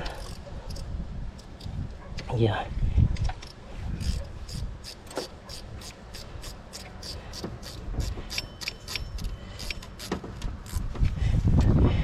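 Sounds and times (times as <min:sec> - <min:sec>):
ratchet wrench clicking: 0:00.0 - 0:01.8, 0:03.4 - 0:10.9.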